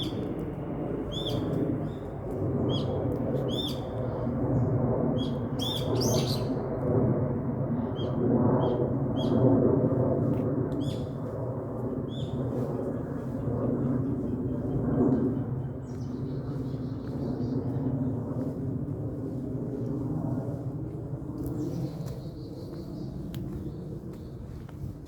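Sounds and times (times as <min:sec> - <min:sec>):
small birds chirping: 0:01.1 - 0:02.0, 0:12.1 - 0:12.4, 0:14.0 - 0:18.5.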